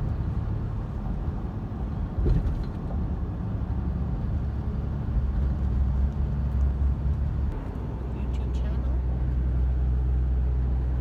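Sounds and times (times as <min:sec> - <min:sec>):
car road and engine rumble: 0:00.0 - 0:11.0.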